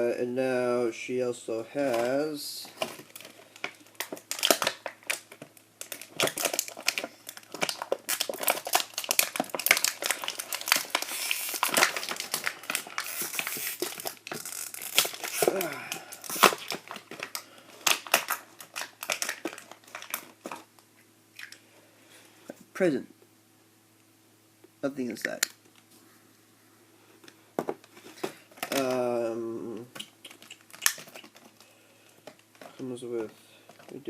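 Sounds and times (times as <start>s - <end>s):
packaging crinkling: 1.8s - 21.6s, 27.9s - 34.0s.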